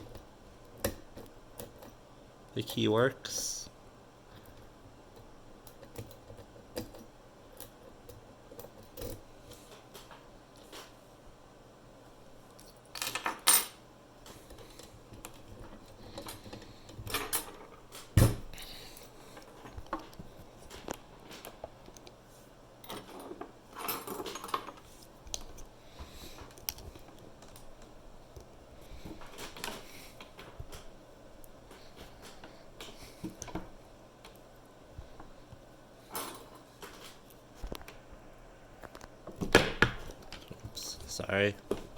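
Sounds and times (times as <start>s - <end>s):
metal lock parts clinking: 5.2s - 9.2s, 12.6s - 13.8s, 14.5s - 18.4s, 22.8s - 25.7s.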